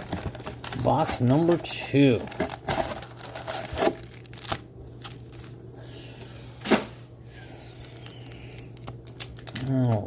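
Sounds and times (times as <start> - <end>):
steady low hum: 0.0 - 10.0
packaging clicks and snaps: 7.8 - 10.0.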